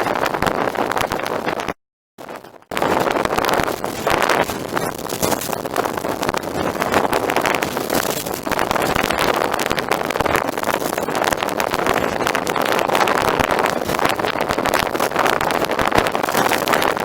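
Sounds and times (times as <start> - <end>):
wind buffeting microphone: 2.7 - 17.0.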